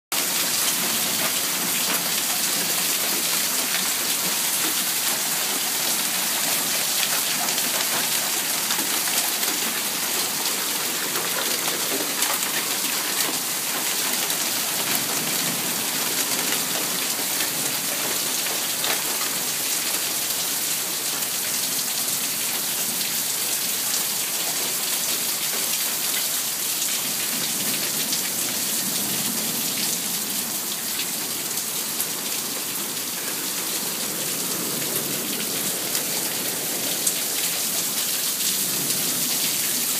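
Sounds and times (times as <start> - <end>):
hail pelting down: 0.2 - 20.1.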